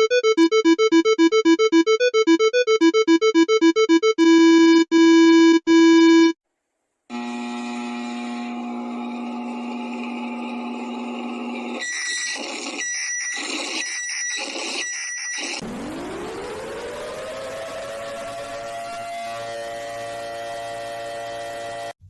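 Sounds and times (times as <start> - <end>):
choppy pulsing alarm tone: 0.0 - 6.3, 15.6 - 21.9
alternating electronic beeps: 0.0 - 6.4
long electronic beeps: 0.0 - 6.4
long steady buzzing tone: 7.1 - 10.0.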